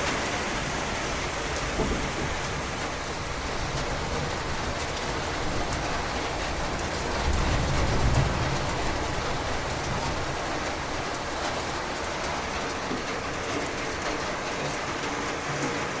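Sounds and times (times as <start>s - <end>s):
rain pouring: 0.0s - 16.0s
low thunder rumble: 1.8s - 12.6s.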